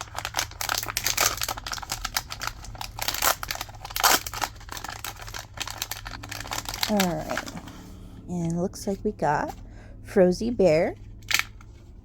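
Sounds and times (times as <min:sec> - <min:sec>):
packaging ripping: 0:00.0 - 0:07.7, 0:11.2 - 0:11.8
packaging crinkling: 0:00.0 - 0:07.8, 0:11.0 - 0:12.0.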